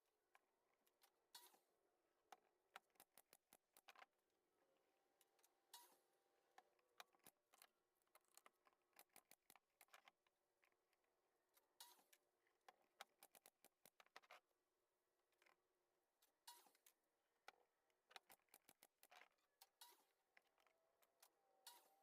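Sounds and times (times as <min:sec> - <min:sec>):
faint clicks and taps: 0:00.3 - 0:04.3, 0:05.2 - 0:14.6, 0:15.2 - 0:22.0.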